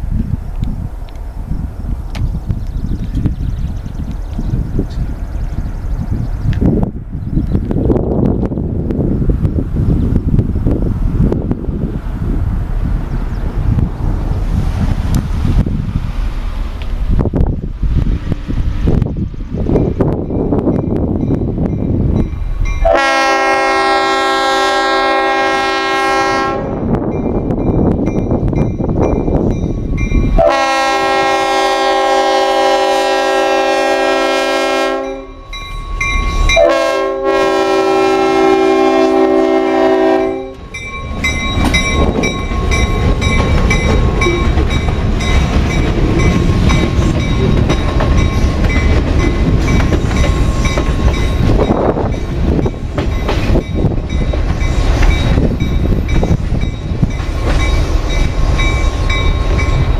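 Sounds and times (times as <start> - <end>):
freight train rumbling over rails: 0.0 - 59.9
locomotive air horn blasts: 22.8 - 26.9, 30.4 - 35.4, 36.5 - 40.8.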